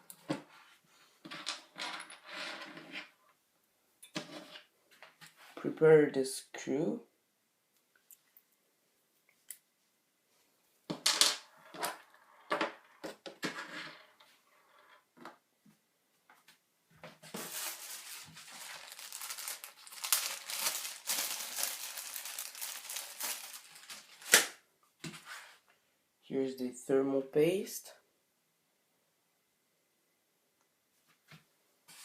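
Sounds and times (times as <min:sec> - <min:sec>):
handling knocks and rustles: 0:17.0 - 0:24.4
plastic packaging crinkling and tearing: 0:17.4 - 0:24.5.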